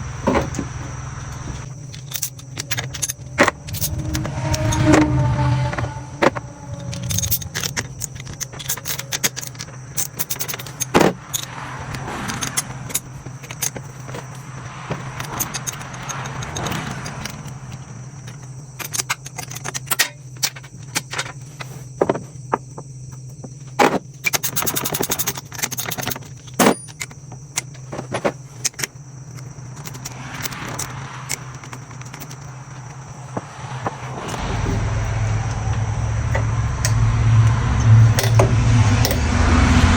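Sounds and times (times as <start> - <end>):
steady low hum: 0.0 - 20.4, 29.0 - 39.9
metal tools clinking and scraping: 1.9 - 11.5.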